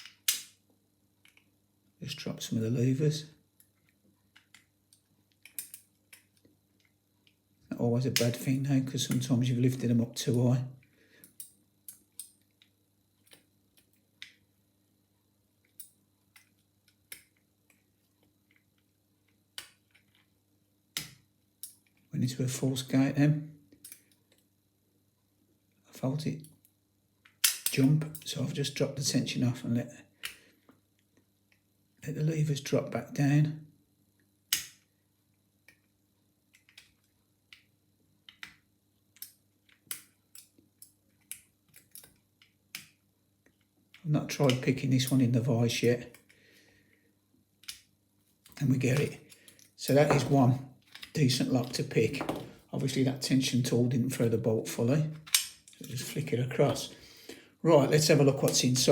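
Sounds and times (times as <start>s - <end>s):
lock picking metallic clicks: 0.0s - 0.6s, 3.6s - 7.4s, 11.2s - 12.4s, 15.6s - 17.8s, 23.8s - 24.4s, 26.4s - 28.3s, 34.5s - 34.8s, 36.5s - 37.7s, 38.3s - 43.0s, 47.6s - 50.3s, 55.1s - 56.0s
metallic lock picking clicks: 0.0s - 0.6s, 5.4s - 6.9s, 23.8s - 24.2s, 27.3s - 28.2s, 55.2s - 55.9s.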